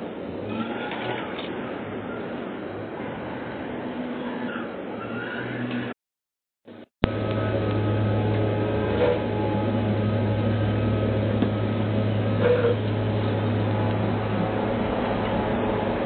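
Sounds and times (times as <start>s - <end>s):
low hum: 6.7s - 16.0s.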